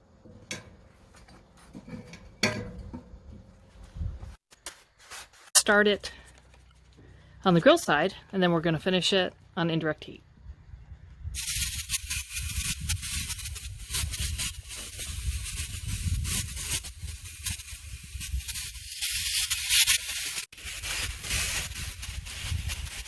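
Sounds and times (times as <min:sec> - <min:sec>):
chicken sizzling on a grill: 0:11.4 - 0:23.0.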